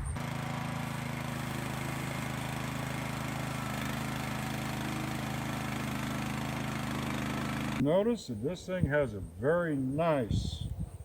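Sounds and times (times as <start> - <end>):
small engine idling: 0.0 - 7.8.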